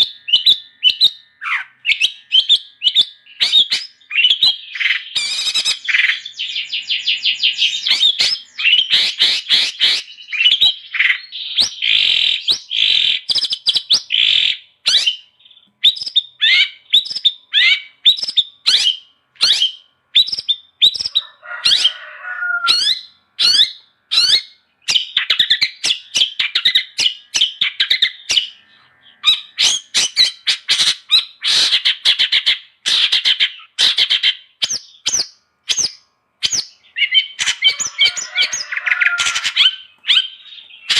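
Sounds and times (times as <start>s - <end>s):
bird chattering and trilling: 0.0s - 40.9s
harsh rasping bird call: 7.3s - 13.3s, 16.0s - 34.5s, 36.4s - 40.9s.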